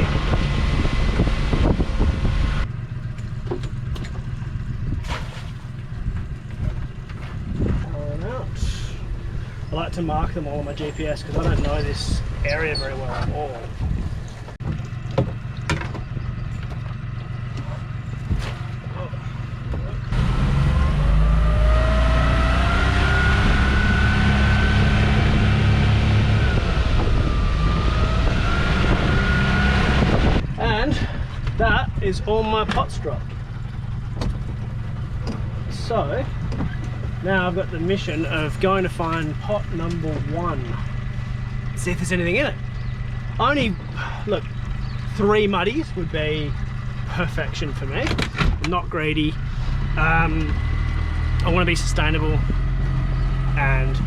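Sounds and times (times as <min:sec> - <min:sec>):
wind rushing on microphone: 0:00.0 - 0:02.7, 0:06.0 - 0:14.6, 0:23.2 - 0:33.1
motorboat motor rumble: 0:00.0 - 0:54.0.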